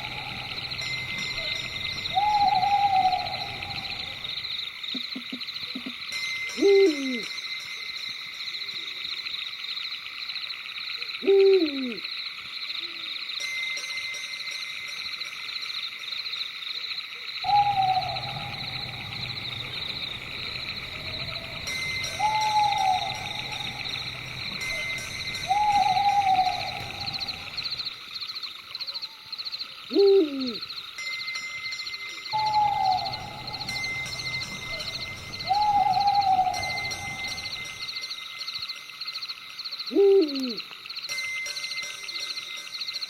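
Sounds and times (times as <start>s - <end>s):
low hum: 0.0s - 4.5s, 17.5s - 27.9s, 32.4s - 37.9s
owl hooting: 0.0s - 4.5s, 11.2s - 12.0s, 17.5s - 27.9s, 29.9s - 30.6s, 32.4s - 37.8s, 39.9s - 40.6s
night insects chorus: 0.0s - 43.0s.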